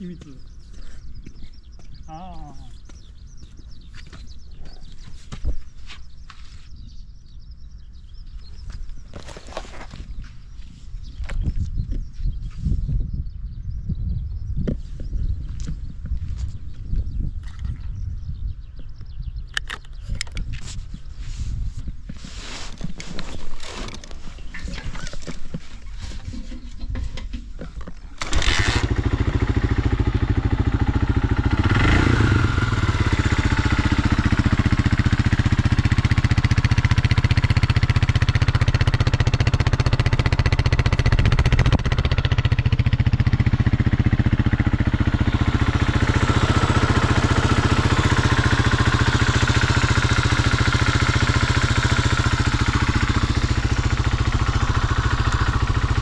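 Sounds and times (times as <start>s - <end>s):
motorcycle engine idling and revving: 13.2s - 56.0s
engine clicks: 23.9s - 29.4s, 45.7s - 56.0s.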